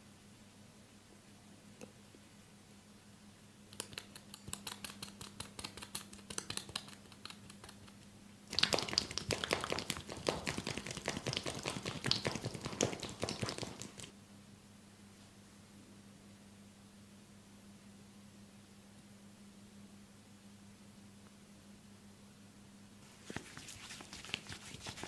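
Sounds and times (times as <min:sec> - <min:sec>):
hands rubbing through hair: 0:08.5 - 0:14.1, 0:23.0 - 0:25.0.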